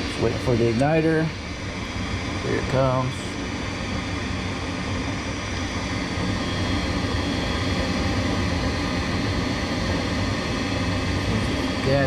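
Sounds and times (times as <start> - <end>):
furnace fan humming: 0.0 - 12.0.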